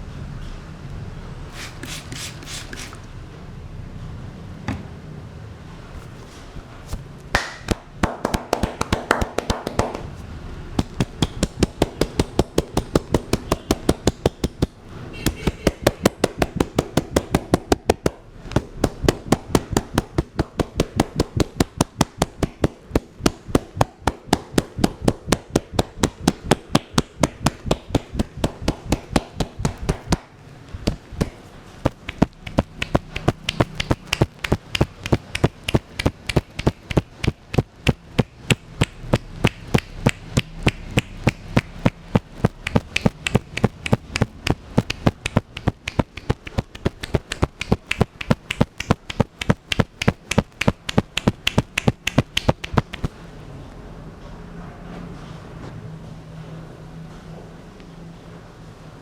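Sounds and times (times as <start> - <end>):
hands tapping and slapping: 6.9 - 10.2, 10.8 - 53.1.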